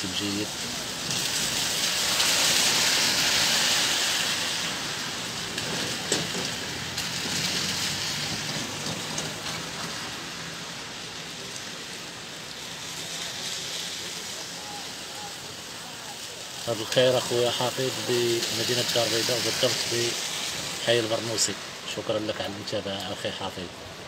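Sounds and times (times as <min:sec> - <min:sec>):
heavy rain falling: 0:00.0 - 0:24.0.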